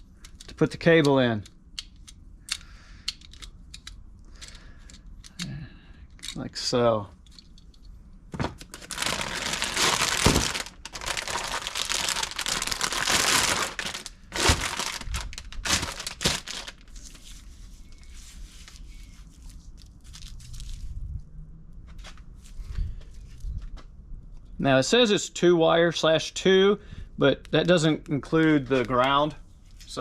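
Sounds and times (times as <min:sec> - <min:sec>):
plastic wrapping crinkling: 0:08.6 - 0:21.0.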